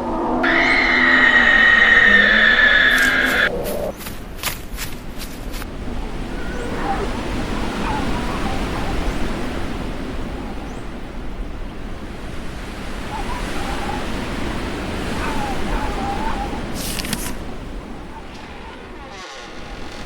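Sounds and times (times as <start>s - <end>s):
faint wavering tones: 0.0s - 4.0s
rushing ambience noise: 0.0s - 6.4s.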